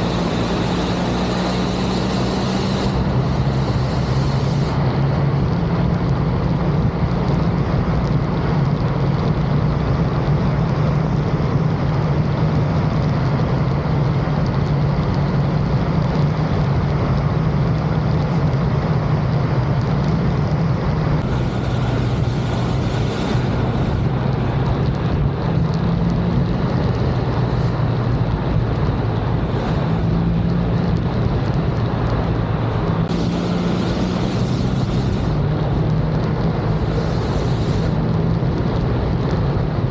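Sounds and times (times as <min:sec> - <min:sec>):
motorcycle engine droning: 0:00.0 - 0:05.4, 0:21.2 - 0:24.9, 0:32.2 - 0:36.0
wind and road rush: 0:00.0 - 0:39.9.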